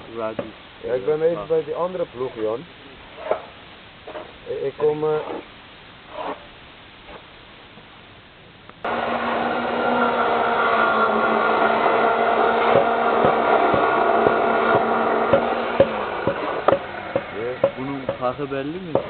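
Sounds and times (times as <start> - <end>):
power tool motor humming: 8.9 - 18.1.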